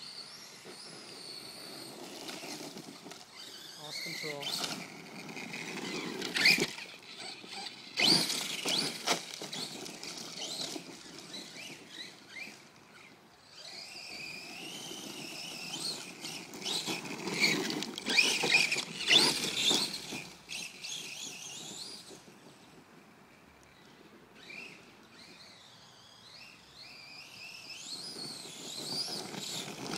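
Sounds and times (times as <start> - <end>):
electric motor whining: 0.4 - 22.0.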